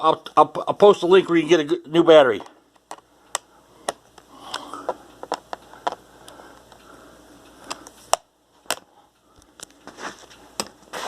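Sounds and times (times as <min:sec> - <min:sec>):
plastic clicks and taps: 0:02.4 - 0:06.0.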